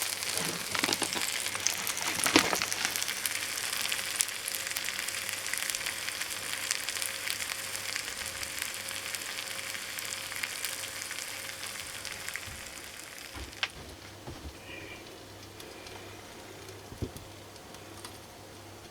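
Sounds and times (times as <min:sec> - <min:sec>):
fish sizzling in grill pan: 0:00.0 - 0:13.7.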